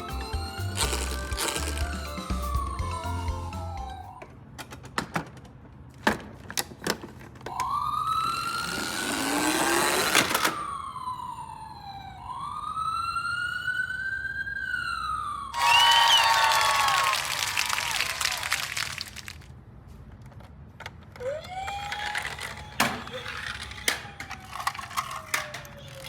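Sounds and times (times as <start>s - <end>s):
toy siren wailing: 0.0s - 4.4s, 7.5s - 17.1s, 21.2s - 26.0s
plastic clicks: 20.1s - 26.0s.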